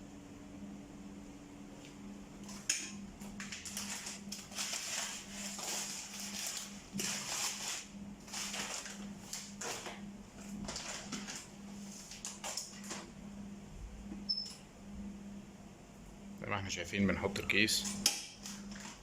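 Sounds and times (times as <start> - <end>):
steady low hum: 0.0 - 19.0
plastic bag rustling: 3.4 - 12.9.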